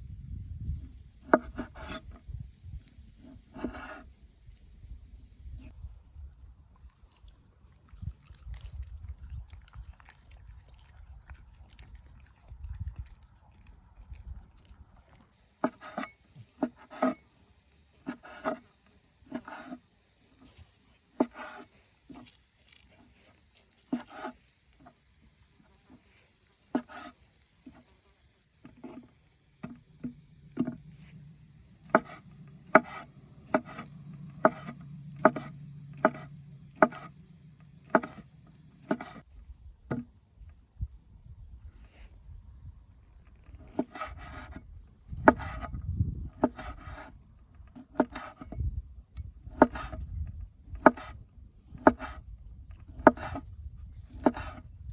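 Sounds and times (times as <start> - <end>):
faint low hum: 0.0 - 54.9.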